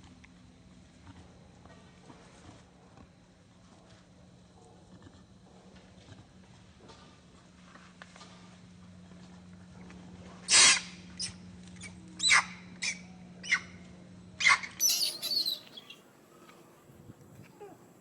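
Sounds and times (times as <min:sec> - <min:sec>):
monkey squealing: 0:14.8 - 0:16.0.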